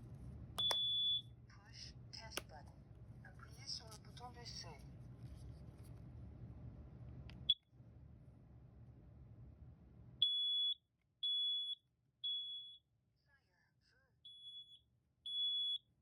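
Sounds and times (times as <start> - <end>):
low steady hum: 0.0 - 10.7
smoke alarm high-pitched beeps: 0.6 - 1.3, 10.2 - 12.8, 14.3 - 15.9.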